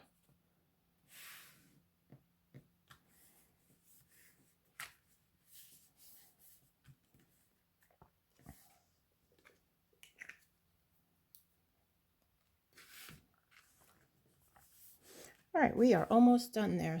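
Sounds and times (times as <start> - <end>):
paper rustling: 12.7 - 15.0.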